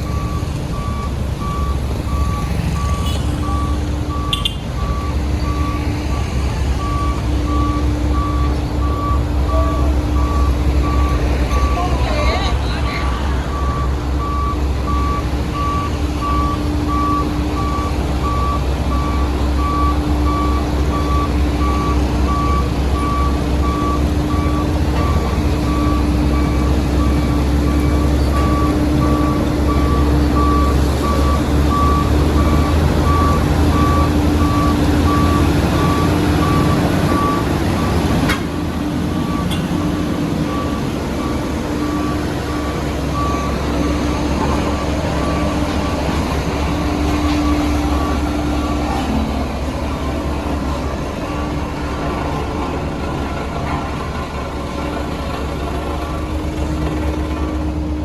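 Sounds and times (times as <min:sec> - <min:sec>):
reversing alarm beeping: 0:00.0 - 0:12.0, 0:13.5 - 0:38.2, 0:39.1 - 0:51.8
diesel engine drone: 0:00.0 - 0:58.0.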